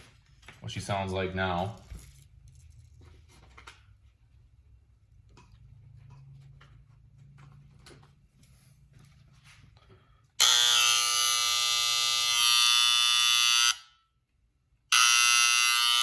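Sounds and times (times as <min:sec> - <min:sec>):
hair clipper buzzing: 0:10.4 - 0:13.9, 0:14.9 - 0:16.0.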